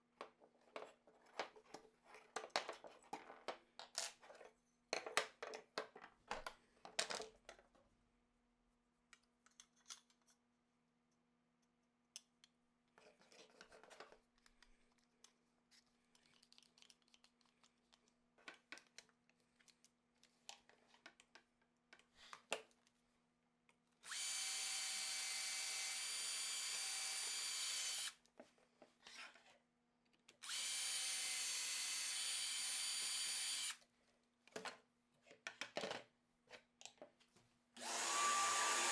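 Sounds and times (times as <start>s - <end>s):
tools and wood clicking: 9.1s - 10.4s
electric drill whining: 24.1s - 28.2s, 30.4s - 33.8s, 37.8s - 38.9s.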